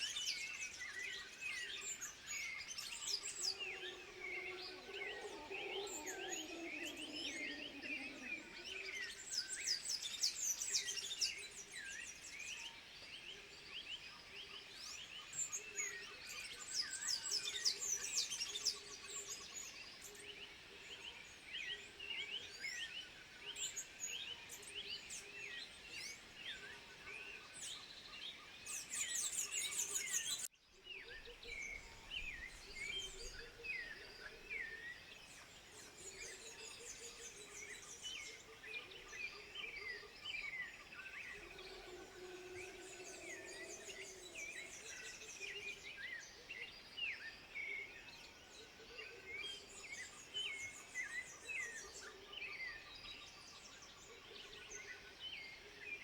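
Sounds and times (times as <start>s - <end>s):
high chirping animal calls: 3.2s - 9.0s
low gliding animal call: 3.2s - 9.3s, 41.1s - 45.6s.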